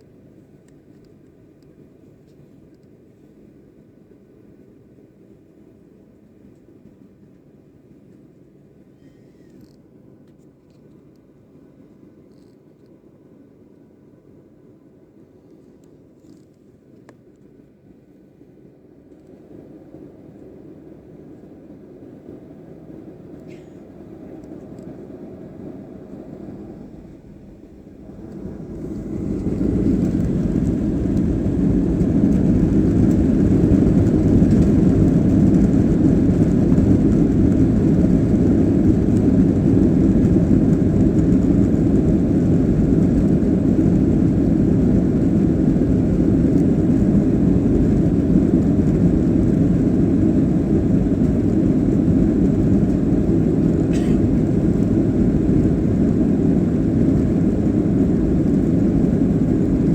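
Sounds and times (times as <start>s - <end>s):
jet engines spooling up: 24.7s - 59.9s.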